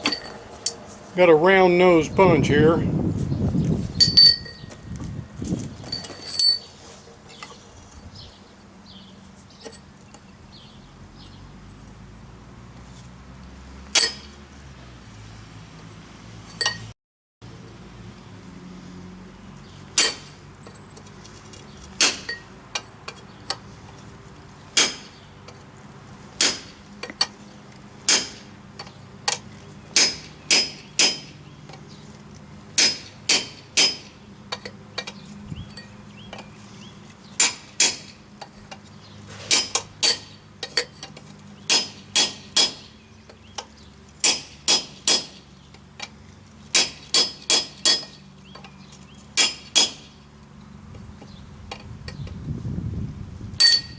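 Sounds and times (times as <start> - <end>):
hammer striking punch on steel: 14.0 - 14.3, 20.0 - 20.3, 22.0 - 22.4, 24.8 - 25.2, 26.4 - 26.8, 28.1 - 28.5, 30.0 - 31.4, 32.8 - 34.1, 37.4 - 38.2, 39.5 - 40.4, 41.7 - 42.9, 44.2 - 45.4, 46.7 - 48.2, 49.4 - 50.1.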